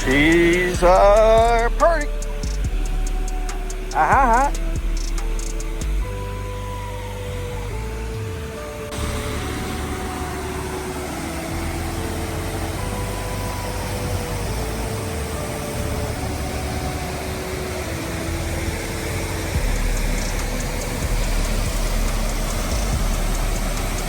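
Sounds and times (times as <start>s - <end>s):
slow melody with bass line: 0.0s - 24.0s
steady rushing noise: 7.3s - 24.0s.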